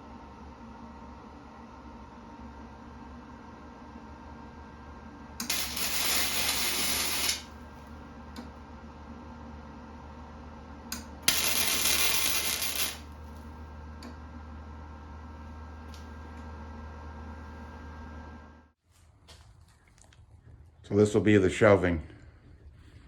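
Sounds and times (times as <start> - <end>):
welding arc noise: 5.4 - 7.8, 11.2 - 13.4.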